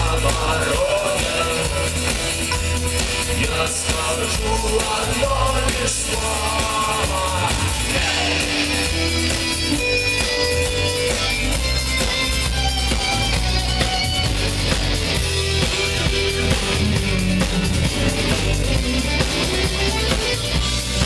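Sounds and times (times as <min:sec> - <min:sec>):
bass guitar: 0:00.0 - 0:21.0
drum kit beat: 0:00.0 - 0:21.0
strummed electric guitar: 0:00.0 - 0:21.0.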